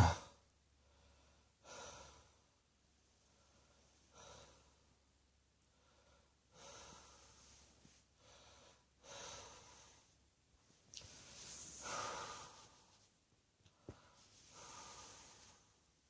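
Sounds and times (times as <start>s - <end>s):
person breathing slowly: 0.8s - 2.5s, 3.2s - 4.9s, 5.6s - 10.2s, 11.0s - 13.1s, 13.7s - 15.9s.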